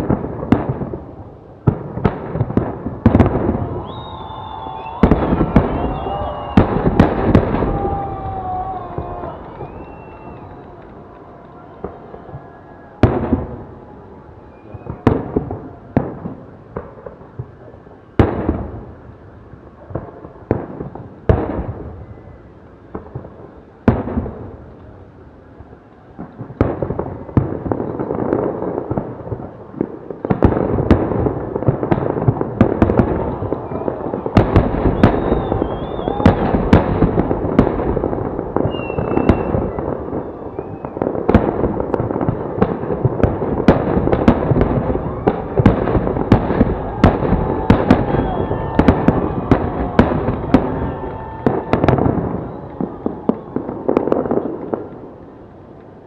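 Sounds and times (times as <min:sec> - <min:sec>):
fireworks bangs and crackling: 0:00.0 - 0:56.0.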